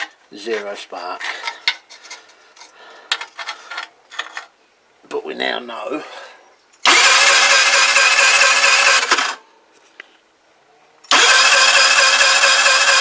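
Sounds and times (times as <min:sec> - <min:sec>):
electric starter cranking engine: 0:06.8 - 0:09.4, 0:11.1 - 0:13.0.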